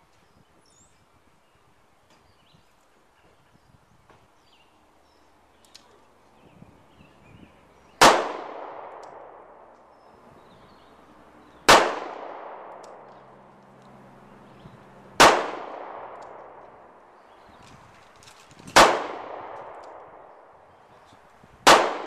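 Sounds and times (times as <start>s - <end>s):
handgun shots echoing: 8.0s - 10.0s, 11.6s - 13.4s, 15.2s - 17.1s, 18.6s - 20.5s, 21.7s - 22.0s.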